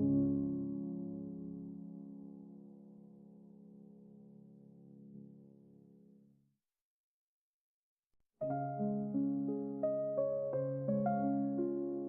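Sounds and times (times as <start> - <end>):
piano music: 0.0 - 5.8, 8.4 - 12.0.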